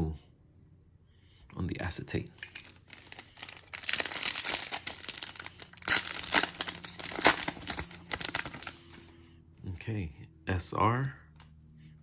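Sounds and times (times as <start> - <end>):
wrapper being torn and crinkled: 2.4 - 9.1.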